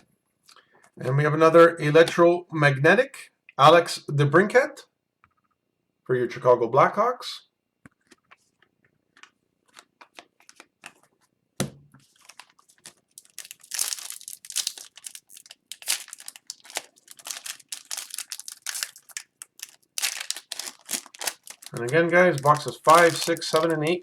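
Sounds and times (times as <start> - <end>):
foil wrapper crinkling and tearing: 12.1 - 24.0.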